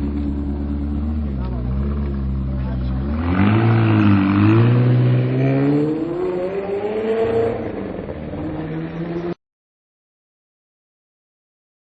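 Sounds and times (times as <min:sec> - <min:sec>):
car engine revving: 0:00.0 - 0:09.4.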